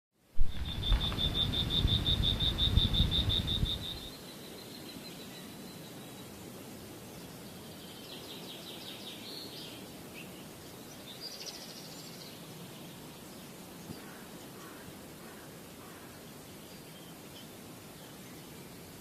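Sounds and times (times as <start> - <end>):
outdoor background hiss: 0.2 - 19.0
bird trilling: 0.4 - 4.1.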